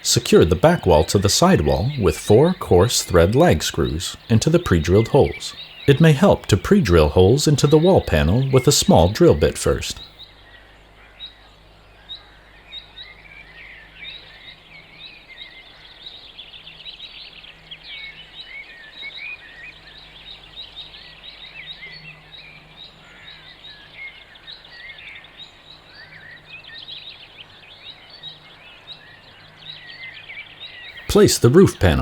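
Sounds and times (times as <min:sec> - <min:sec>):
small birds chirping and singing: 0:00.0 - 0:10.2.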